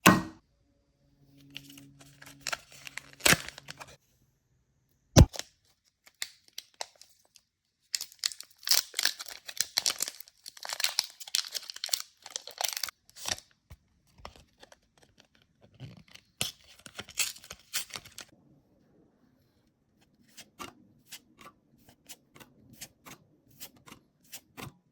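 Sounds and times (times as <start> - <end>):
foil wrapper tearing and crinkling: 1.6 - 4.0, 5.2 - 13.5, 14.3 - 18.3.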